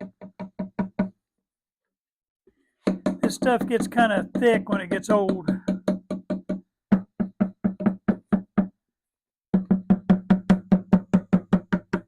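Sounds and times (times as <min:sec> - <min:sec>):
rapid ringing knocking: 0:02.9 - 0:06.6.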